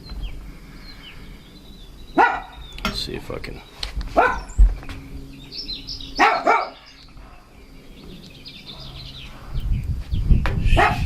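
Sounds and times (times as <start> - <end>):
dog barking: 2.2 - 2.6, 4.2 - 4.5, 6.2 - 7.5, 10.8 - 11.0.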